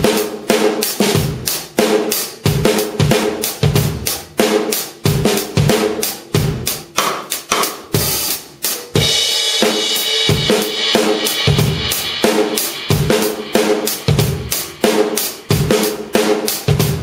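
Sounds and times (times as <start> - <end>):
drum kit groove: 0.0 - 17.0
cymbal crash: 8.2 - 17.0.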